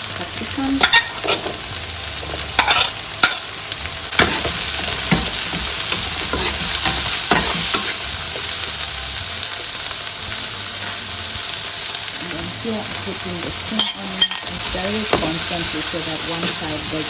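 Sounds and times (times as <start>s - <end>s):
vegetables sizzling in oil: 0.0s - 17.0s
spoon scraping a pan: 0.4s - 8.7s, 13.5s - 17.0s.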